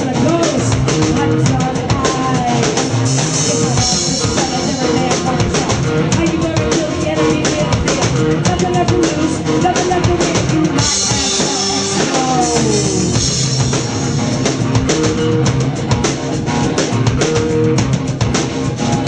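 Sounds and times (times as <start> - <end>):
live rock band playing: 0.0 - 19.0
guitar notes sliding downward: 10.8 - 17.8.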